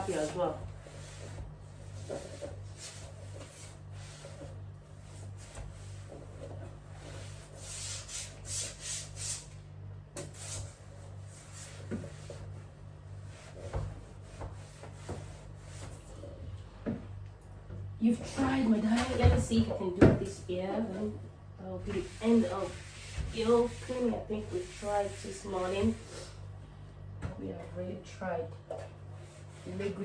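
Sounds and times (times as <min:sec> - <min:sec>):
cloth scrubbing a surface: 0:00.0 - 0:09.5, 0:10.2 - 0:16.1, 0:21.8 - 0:26.4, 0:29.2 - 0:30.0.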